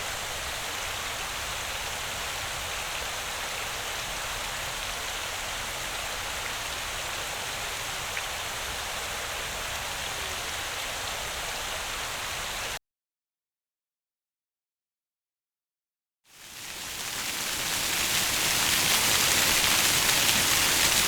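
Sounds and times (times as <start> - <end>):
water fountain splashing: 0.0 - 12.8, 16.4 - 21.0.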